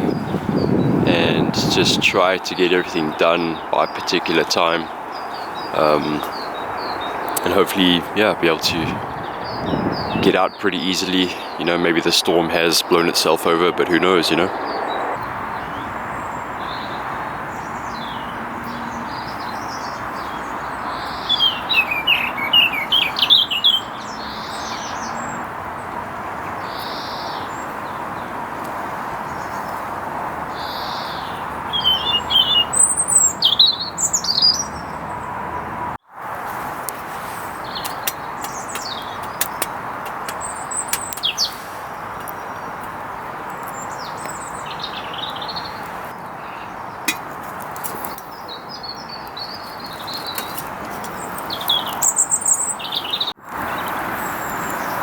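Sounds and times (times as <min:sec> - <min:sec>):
songbird chirping: 0:00.0 - 0:35.8, 0:36.4 - 0:55.0.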